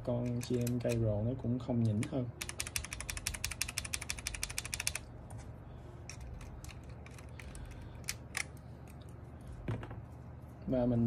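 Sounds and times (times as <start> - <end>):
mechanical keyboard typing: 0.0 - 1.1, 1.8 - 5.0.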